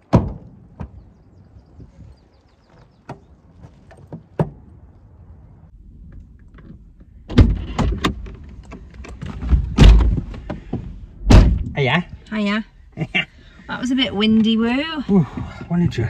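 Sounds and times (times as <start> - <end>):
wind gusting on microphone: 0.8 - 2.4
heavy thumps: 7.3 - 12.3.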